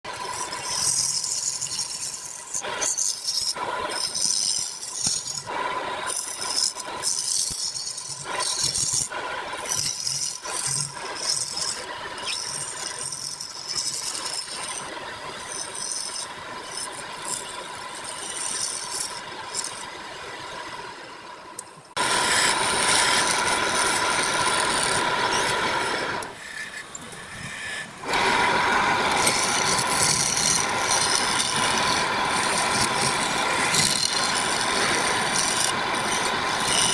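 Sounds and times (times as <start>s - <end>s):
turning tool scraping wood: 0.4s - 19.8s, 22.0s - 36.9s
lathe motor whine: 22.0s - 36.9s.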